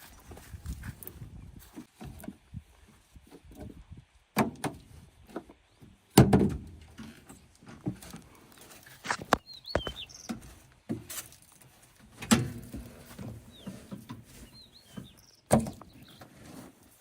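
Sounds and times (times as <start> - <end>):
short bird chirp: 9.1 - 10.3.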